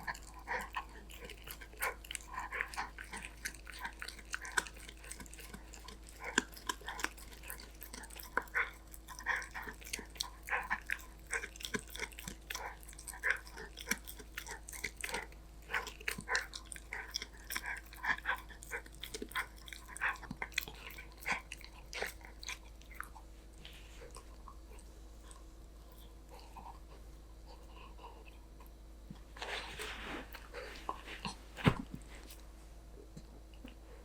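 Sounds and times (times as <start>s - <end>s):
puppy crunching a snack: 0.0s - 32.5s.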